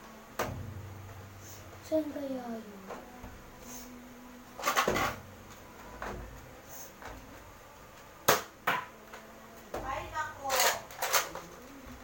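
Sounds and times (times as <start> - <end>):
objects clattering: 4.6 - 7.4.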